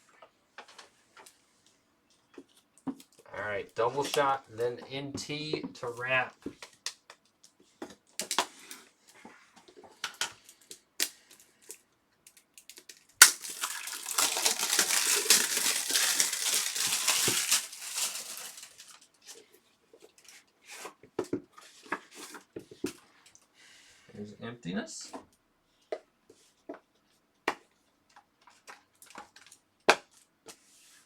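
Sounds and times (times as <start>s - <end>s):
plastic wrapping crinkling and tearing: 11.0s - 19.1s.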